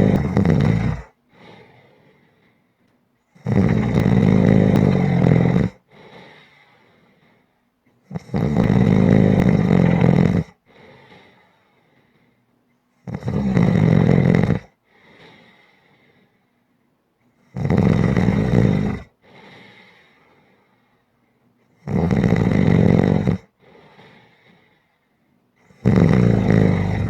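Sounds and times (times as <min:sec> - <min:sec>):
loud snoring: 0:00.0 - 0:01.2, 0:03.4 - 0:05.8, 0:08.1 - 0:10.6, 0:13.0 - 0:14.8, 0:17.4 - 0:19.2, 0:21.8 - 0:24.2, 0:25.7 - 0:27.0
quiet breath: 0:00.0 - 0:03.4, 0:04.6 - 0:08.0, 0:10.5 - 0:13.0, 0:14.6 - 0:17.6, 0:19.1 - 0:21.8, 0:23.4 - 0:27.0.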